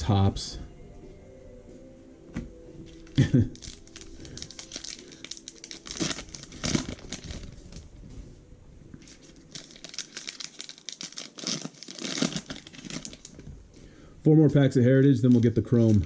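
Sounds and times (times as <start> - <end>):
card pack wrapper crinkling: 3.0 - 7.9, 9.0 - 13.4, 15.2 - 16.0.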